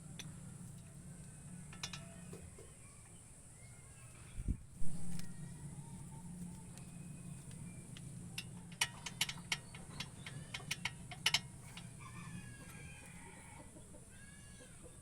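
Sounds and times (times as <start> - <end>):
faint high chirping calls: 2.0 - 4.5
sharp irregular clicks and knocks: 7.5 - 11.9.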